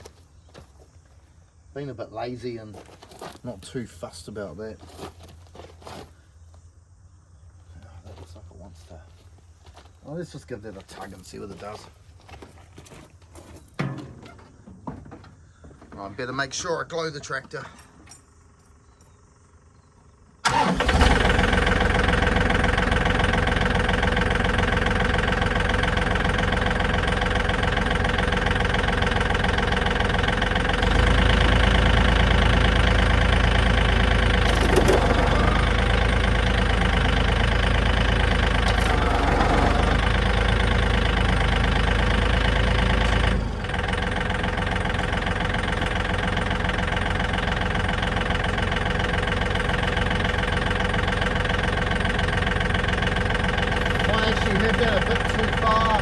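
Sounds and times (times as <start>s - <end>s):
diesel tractor engine running: 18.4s - 56.0s.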